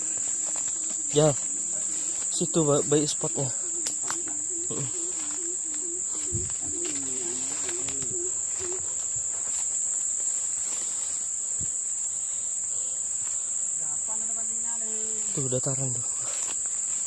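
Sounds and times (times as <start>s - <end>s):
insects shrilling: 0.0s - 17.0s
faint clicks: 3.8s - 4.4s.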